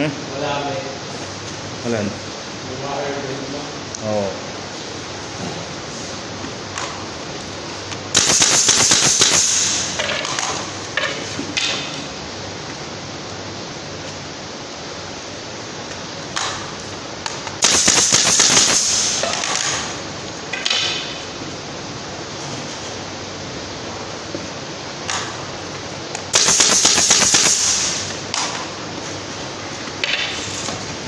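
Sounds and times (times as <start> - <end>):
air hiss: 8.1 - 10.1, 17.6 - 19.6, 26.3 - 28.2
pneumatic nail gun shots: 8.1 - 10.6, 17.6 - 20.0, 26.3 - 28.6.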